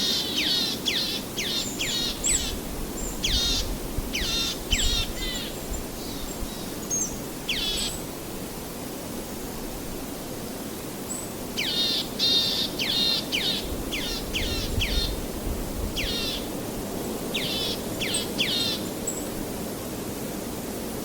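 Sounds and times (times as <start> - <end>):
songbird chirping: 0.0 - 8.1, 11.0 - 19.4.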